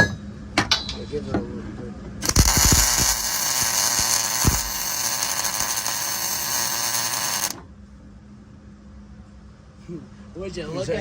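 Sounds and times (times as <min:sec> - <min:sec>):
sharp pops: 0:02.2 - 0:04.8
welding arc crackling: 0:02.2 - 0:07.6.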